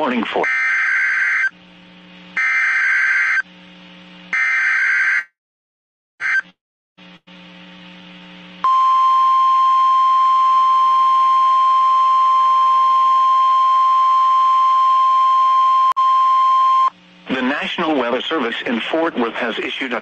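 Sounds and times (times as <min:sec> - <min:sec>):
steady high alarm tone: 0:08.6 - 0:16.9.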